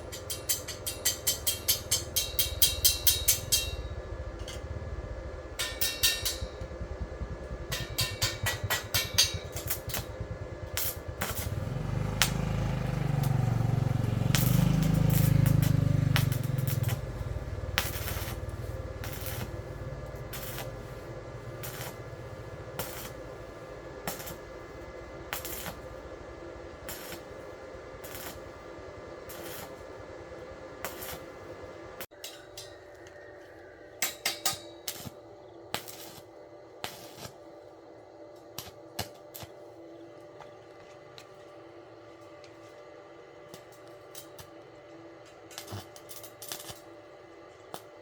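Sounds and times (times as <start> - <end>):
steady hum: 0.0 - 48.0.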